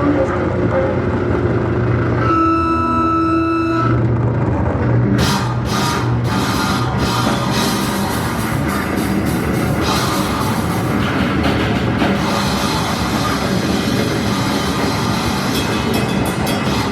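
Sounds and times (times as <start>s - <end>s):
droning guitar and bass: 0.0s - 16.9s
rock band playing: 5.1s - 16.9s
drums and cymbals crashing: 5.2s - 16.9s.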